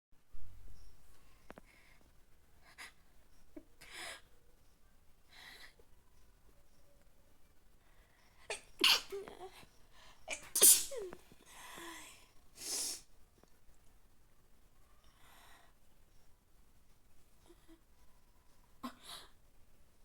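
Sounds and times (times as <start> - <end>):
faint breathy noises: 0.8 - 7.0, 7.6 - 13.2, 14.8 - 16.4
person sneezing: 8.5 - 9.2, 10.3 - 11.2
quick intake of breath: 12.6 - 13.0.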